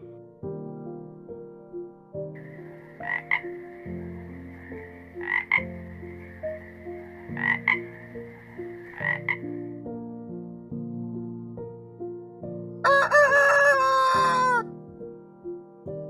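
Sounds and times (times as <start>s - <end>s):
animal croaking: 2.4s - 9.6s.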